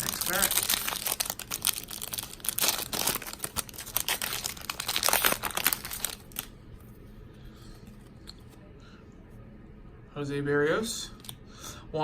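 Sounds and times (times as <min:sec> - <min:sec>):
plastic wrapper crinkling and tearing: 0:00.0 - 0:06.6.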